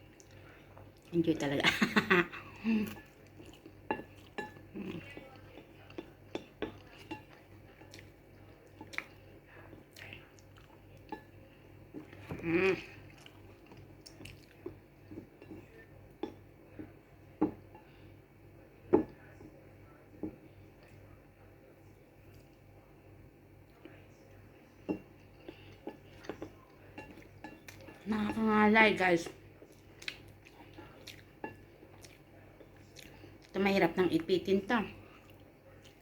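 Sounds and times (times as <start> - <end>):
chewing: 2.8 - 15.8, 25.2 - 28.1, 29.3 - 33.6, 35.1 - 36.0.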